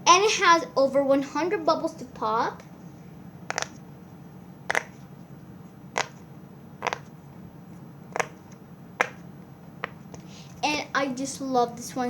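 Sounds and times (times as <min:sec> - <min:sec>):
pop-it fidget toy popping: 0:03.5 - 0:03.8, 0:04.7 - 0:05.0, 0:05.9 - 0:06.2, 0:06.8 - 0:07.1, 0:08.1 - 0:08.4, 0:09.0 - 0:09.2.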